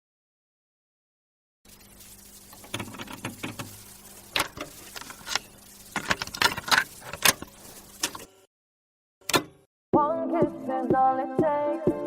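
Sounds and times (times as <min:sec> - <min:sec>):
clicks and rattles: 0:04.4 - 0:08.2.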